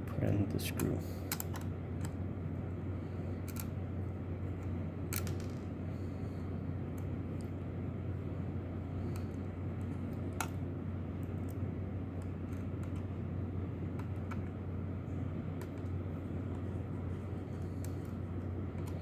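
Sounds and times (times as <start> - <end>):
steady low hum: 0.0 - 19.0
small parts clicking and tapping: 3.4 - 3.8, 4.6 - 5.7.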